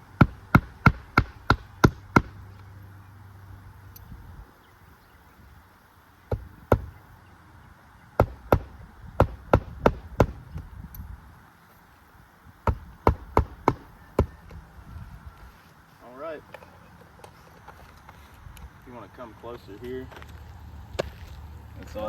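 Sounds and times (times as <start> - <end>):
hammer driving nails into shingle: 0.2 - 2.4, 8.2 - 10.7, 12.6 - 14.3.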